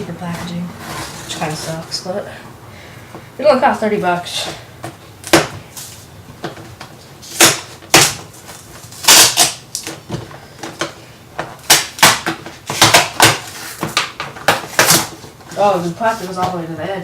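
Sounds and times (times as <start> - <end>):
plastic packaging crackling: 5.2 - 10.2.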